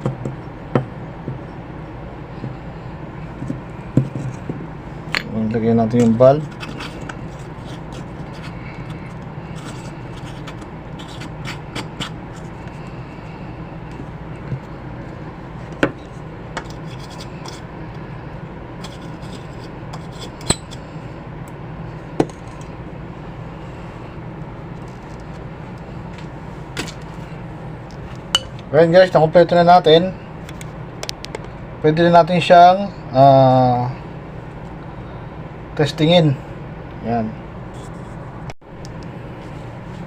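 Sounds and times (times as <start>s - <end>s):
low hum: 0.0s - 31.9s.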